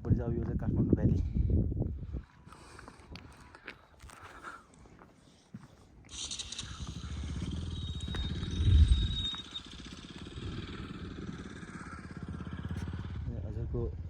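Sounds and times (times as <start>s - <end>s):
vehicle engine running: 6.1s - 14.0s.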